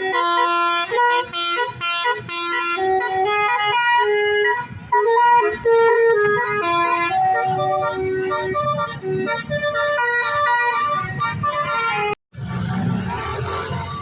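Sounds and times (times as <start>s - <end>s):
musical bus air horn melody: 0.0s - 12.2s.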